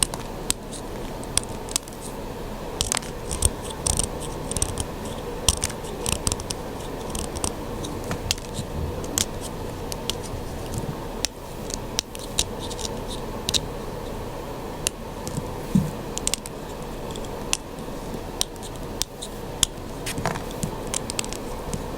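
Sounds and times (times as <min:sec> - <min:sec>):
blade scraping chalk: 0:02.8 - 0:10.9, 0:11.6 - 0:14.2, 0:16.2 - 0:21.8.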